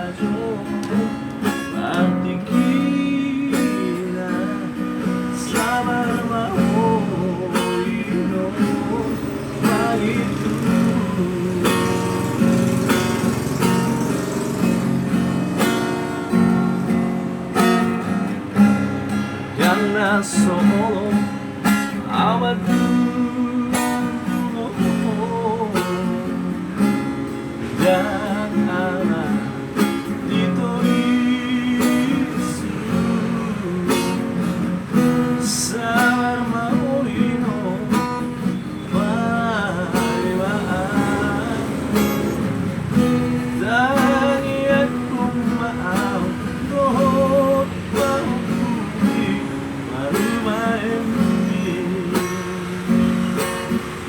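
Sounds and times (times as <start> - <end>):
singing voice with vibrato: 0.0 - 13.6, 27.6 - 53.3
strummed acoustic guitar: 0.0 - 54.0.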